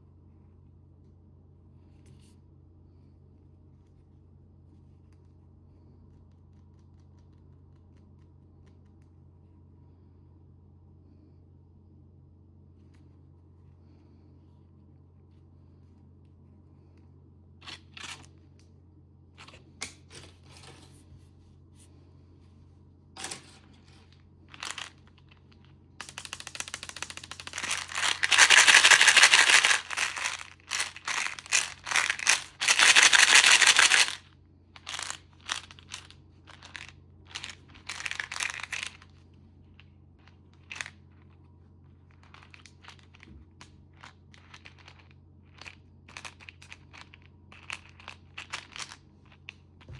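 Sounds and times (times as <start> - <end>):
plastic packaging crinkling: 23.2 - 39.0, 40.6 - 40.9.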